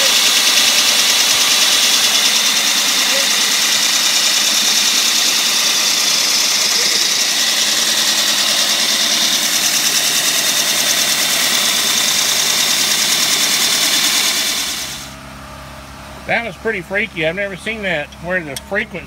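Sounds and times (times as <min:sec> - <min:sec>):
core drill motor running: 0:00.0 - 0:15.2.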